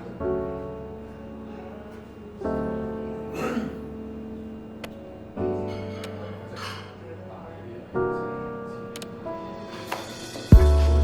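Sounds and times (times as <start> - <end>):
sustained music chords: 9.6 - 11.0.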